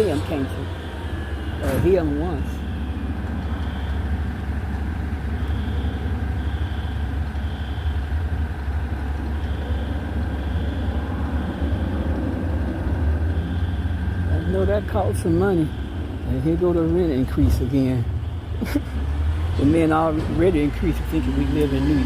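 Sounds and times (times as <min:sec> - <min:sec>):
reversing alarm beeps: 0:00.0 - 0:04.5, 0:05.3 - 0:08.4, 0:09.3 - 0:19.0
diesel engine rumble: 0:00.0 - 0:22.0.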